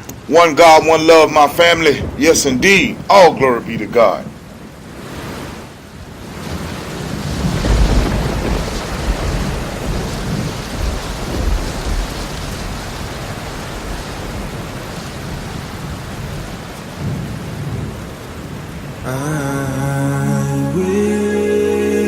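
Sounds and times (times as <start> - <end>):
rain hissing: 0.0 - 22.0
thunder rumble: 1.4 - 5.4, 6.0 - 19.2.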